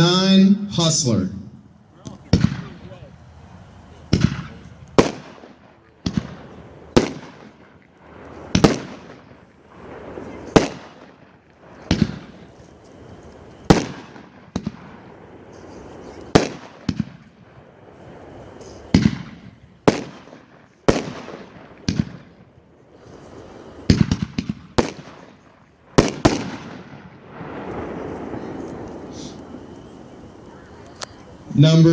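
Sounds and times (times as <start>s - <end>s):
firework cake bangs: 2.2s - 2.8s, 4.1s - 12.5s, 13.6s - 15.1s, 16.3s - 17.3s, 18.8s - 22.4s, 23.8s - 29.8s.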